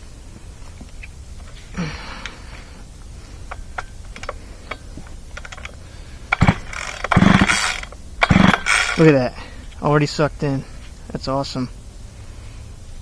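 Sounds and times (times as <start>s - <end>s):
chainsaw starter cord pulls: 3.5s - 9.2s.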